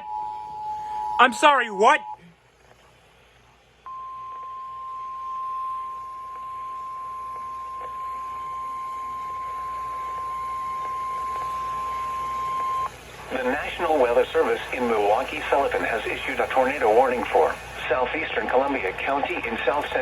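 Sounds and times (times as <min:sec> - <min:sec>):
steady high-pitched alarm tone: 0:00.0 - 0:02.2, 0:03.8 - 0:20.0.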